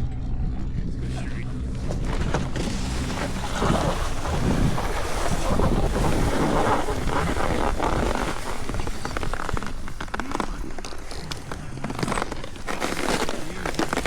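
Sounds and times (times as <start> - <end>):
wind buffeting microphone: 0.8 - 14.0.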